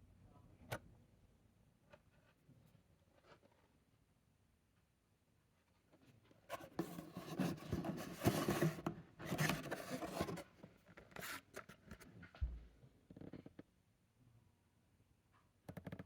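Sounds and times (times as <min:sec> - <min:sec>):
cardboard and plastic rubbing: 0:06.6 - 0:10.5.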